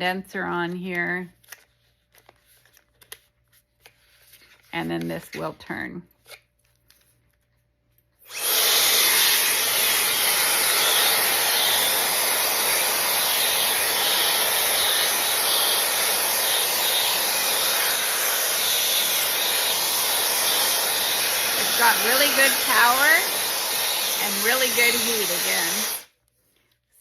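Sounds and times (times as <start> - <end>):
hair dryer blowing air: 8.2 - 26.1.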